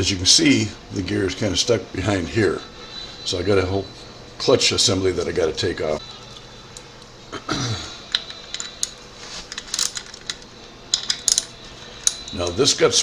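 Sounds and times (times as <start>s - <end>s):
hand tools clicking on metal: 8.1s - 12.7s.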